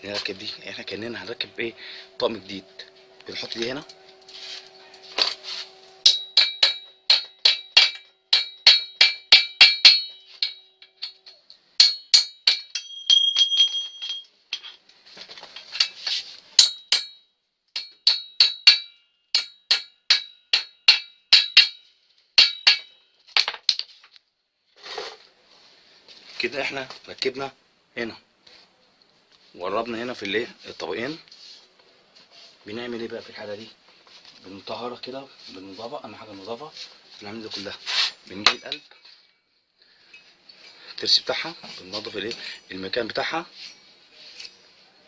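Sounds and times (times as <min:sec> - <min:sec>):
metal-on-metal strikes: 0:05.0 - 0:14.8, 0:17.8 - 0:21.8, 0:22.4 - 0:23.0.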